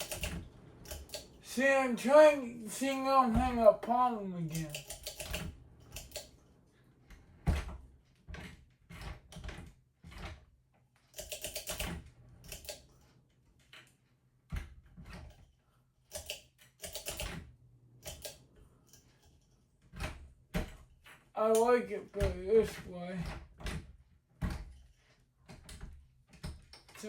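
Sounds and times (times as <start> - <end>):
bursts of rapid clicks: 0.0 - 1.5.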